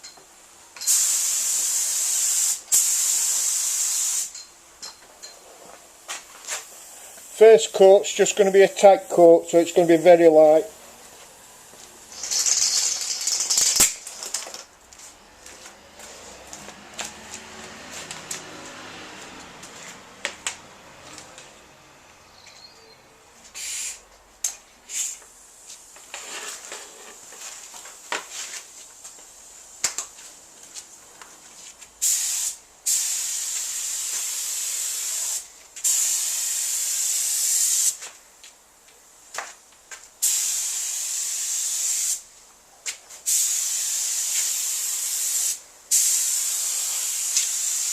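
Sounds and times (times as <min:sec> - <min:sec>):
paint spray gun hissing: 0:00.8 - 0:04.3, 0:06.5 - 0:10.8, 0:12.1 - 0:14.0, 0:23.5 - 0:24.0, 0:24.9 - 0:25.3, 0:32.0 - 0:38.0, 0:40.2 - 0:42.2, 0:43.2 - 0:47.9.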